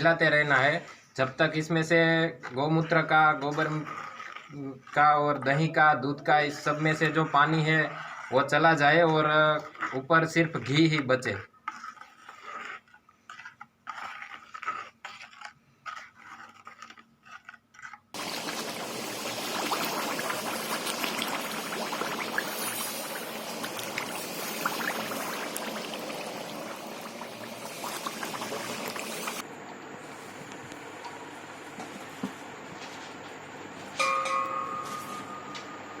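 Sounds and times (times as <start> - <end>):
crackly liquid noise: 2.4 - 5.5, 11.4 - 29.4.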